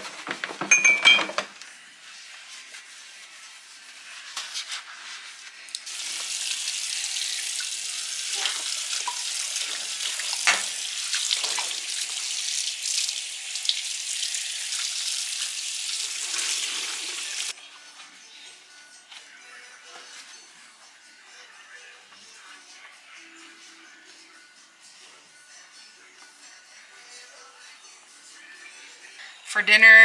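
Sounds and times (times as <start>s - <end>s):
clinks in sink: 0.6s - 1.5s, 10.4s - 10.8s
faucet running into sink: 5.9s - 17.5s.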